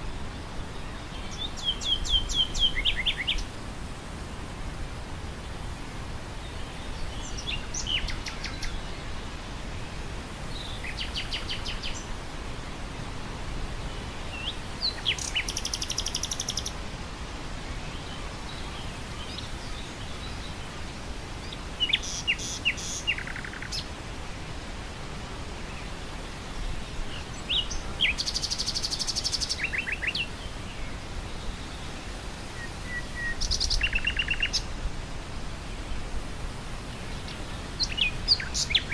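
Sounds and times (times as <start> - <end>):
wind blowing through grass: 0.0 - 38.9
nightingale singing: 0.8 - 3.5, 7.1 - 9.0, 10.5 - 12.1, 14.3 - 16.8, 21.4 - 23.9, 27.2 - 30.4, 32.6 - 34.7, 37.2 - 38.9.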